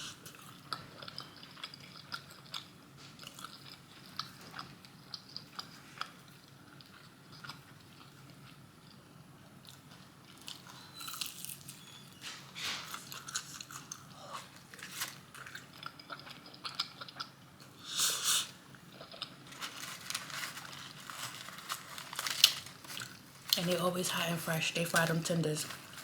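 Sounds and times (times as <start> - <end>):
crunching bites and chewing: 9.6 - 11.8, 12.9 - 17.7, 18.8 - 23.5.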